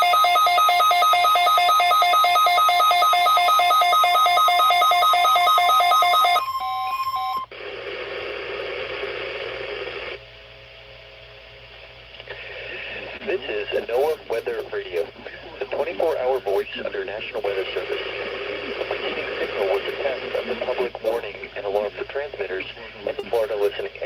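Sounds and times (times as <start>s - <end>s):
electronic alarm alternating tones: 0.0s - 7.5s
radio static hiss: 7.5s - 10.2s, 12.1s - 24.0s.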